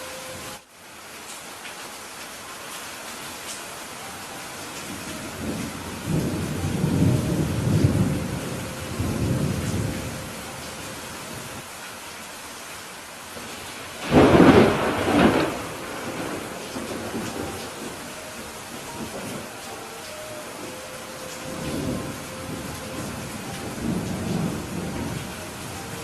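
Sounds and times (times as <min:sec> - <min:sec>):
heavy rain: 0:00.0 - 0:26.0
rolling thunder: 0:05.0 - 0:10.5, 0:14.0 - 0:19.5
sharp thunderclap: 0:14.0 - 0:18.0.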